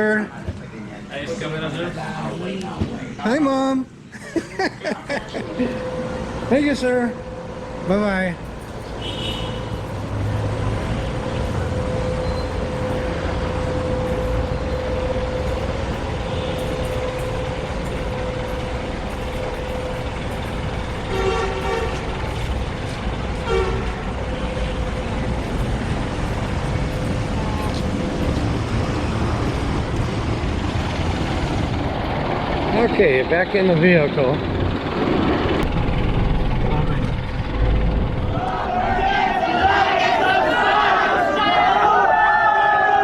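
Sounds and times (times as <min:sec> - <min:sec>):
road traffic rumble: 0:00.0 - 0:43.0
vehicle horn toots: 0:08.9 - 0:20.4, 0:21.0 - 0:22.5, 0:23.4 - 0:24.8.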